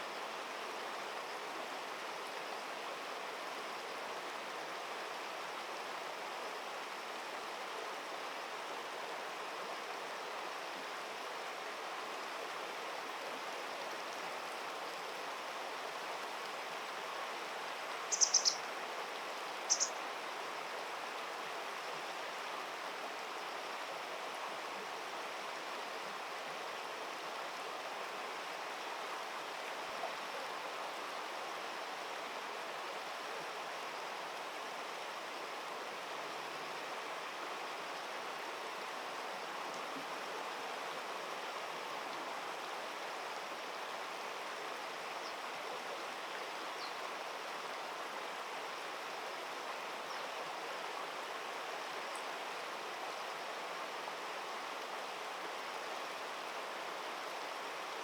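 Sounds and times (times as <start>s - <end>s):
high-pitched bird chirps: 18.1s - 18.6s, 19.7s - 19.9s.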